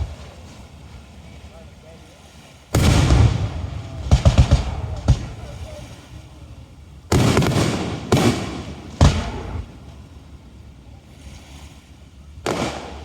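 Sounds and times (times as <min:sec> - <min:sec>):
fireworks booming: 0:00.0 - 0:00.5, 0:02.7 - 0:10.7, 0:12.4 - 0:13.0
trailing rumble: 0:00.0 - 0:13.0.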